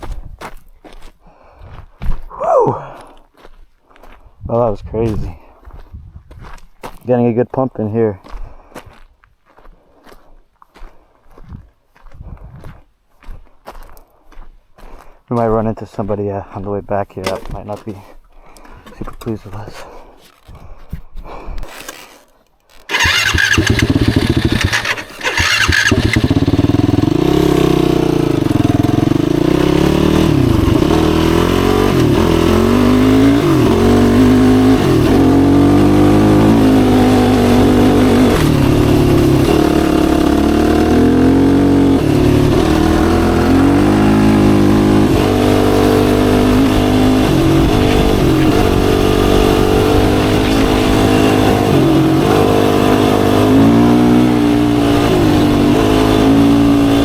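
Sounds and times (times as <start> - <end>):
atv engine revving: 22.9 - 57.0.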